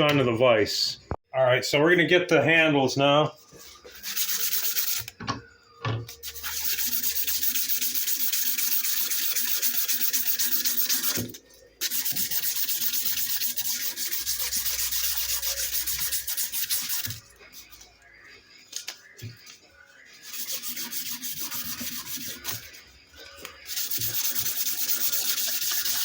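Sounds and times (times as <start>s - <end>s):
sandpaper rasping on metal: 4.0s - 5.0s, 6.2s - 11.2s, 11.8s - 17.2s, 20.1s - 22.8s, 23.6s - 26.0s.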